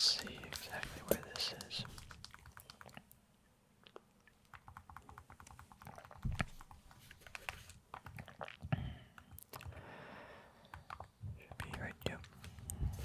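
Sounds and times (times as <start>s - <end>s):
keyboard typing clicks: 4.5s - 8.2s.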